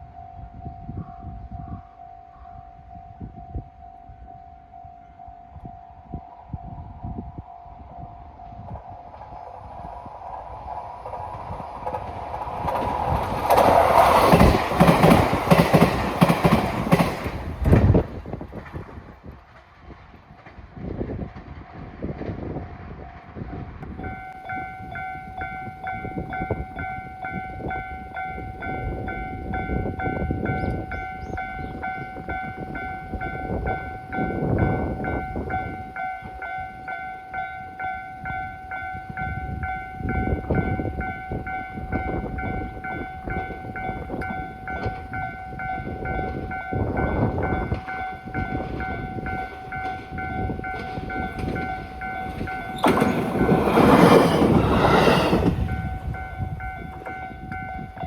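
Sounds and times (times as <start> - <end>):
train rumbling on rails: 0.0 - 58.0
level crossing warning bell: 24.0 - 58.0.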